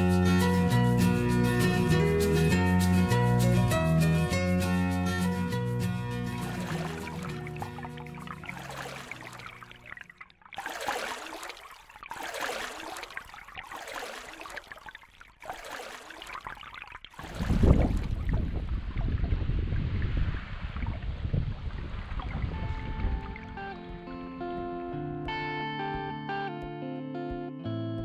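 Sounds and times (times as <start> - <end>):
water swishing and splashing: 5.3 - 23.6
wind buffeting microphone: 17.2 - 24.1.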